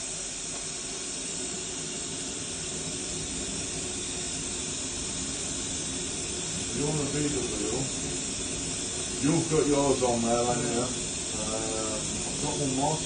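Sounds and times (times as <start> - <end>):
workshop machinery hiss: 0.0 - 13.0.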